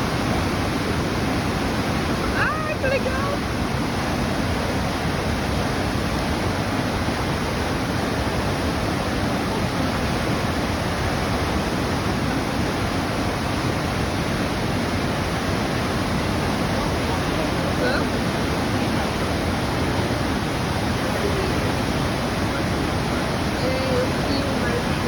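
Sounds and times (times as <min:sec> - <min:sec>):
rushing white water: 0:00.0 - 0:25.0.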